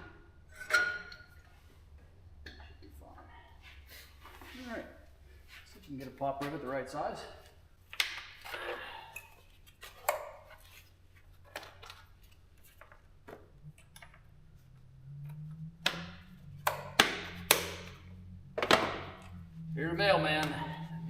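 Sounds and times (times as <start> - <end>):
low steady hum: 11.0 - 21.0.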